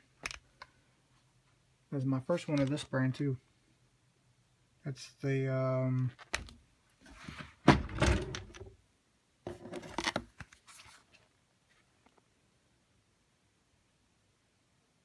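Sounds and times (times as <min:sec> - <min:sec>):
handling clunks and knocks: 0:07.3 - 0:08.7.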